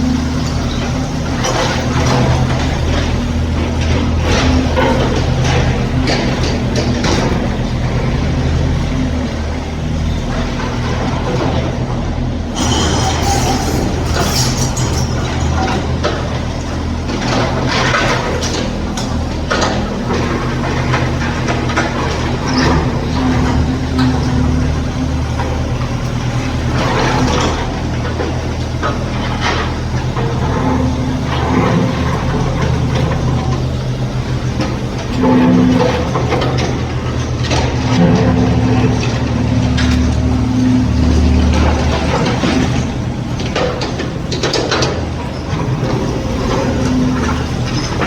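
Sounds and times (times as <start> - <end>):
excavator engine running: 0.0 - 48.0
metallic clanks and rattles: 12.5 - 48.0
knocks and scraping: 12.6 - 48.0.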